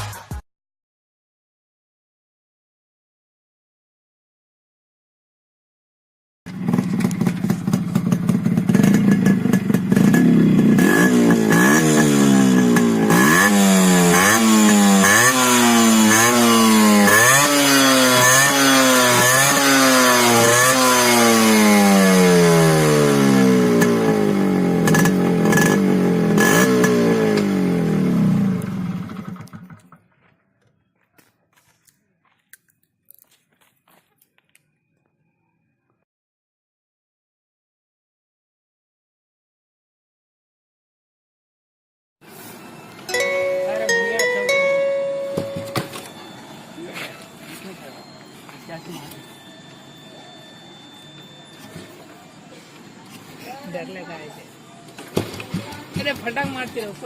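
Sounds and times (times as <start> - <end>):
motorcycle engine revving: 6.5 - 30.1.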